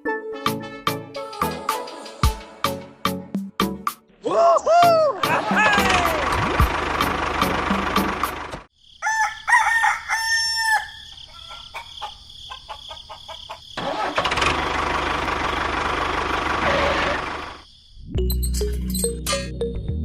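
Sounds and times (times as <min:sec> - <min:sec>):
engine starting and running: 0:05.4 - 0:08.7, 0:13.8 - 0:17.6
rooster crowing: 0:08.9 - 0:13.8.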